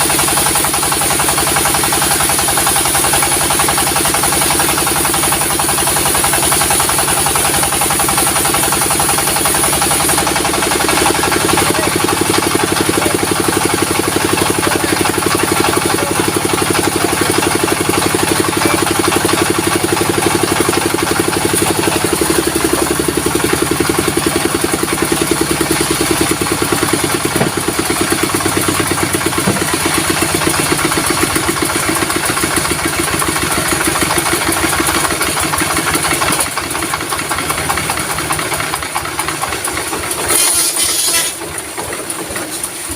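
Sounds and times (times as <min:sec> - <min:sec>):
diesel engine running: 0:00.0 - 0:42.9
high steady whine: 0:15.9 - 0:32.0.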